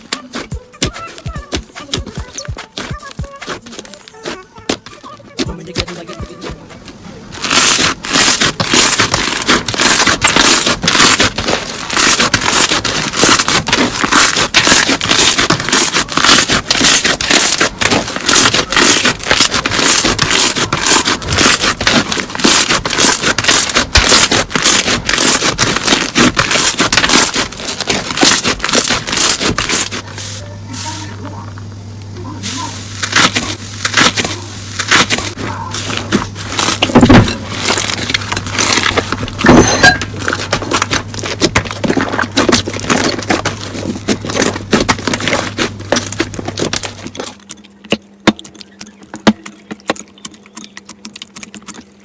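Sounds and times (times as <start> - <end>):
crunchy slime crackling: 0.0 - 52.0.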